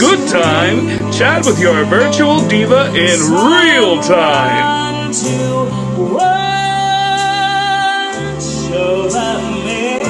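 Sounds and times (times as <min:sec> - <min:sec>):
pop band backing: 0:00.0 - 0:10.0
woman singing: 0:03.3 - 0:10.0.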